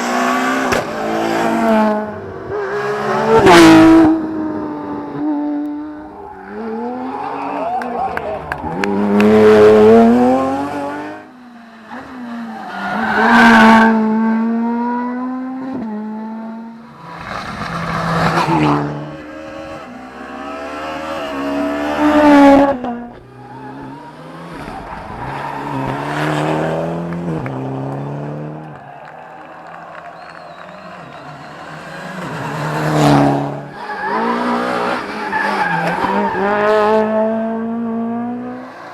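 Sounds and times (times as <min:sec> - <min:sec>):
rally cars passing at speed: 0:00.0 - 0:38.9.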